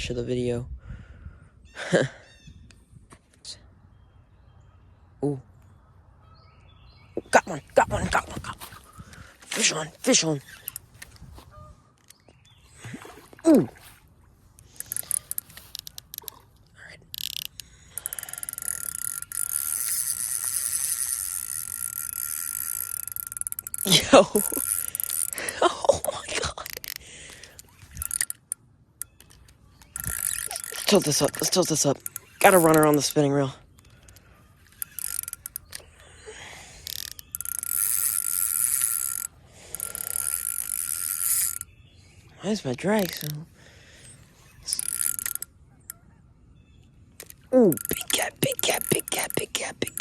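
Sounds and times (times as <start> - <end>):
fishing reel clicking: 7.9 - 11.4, 14.6 - 41.9, 42.8 - 43.4, 44.0 - 46.0, 47.2 - 50.0.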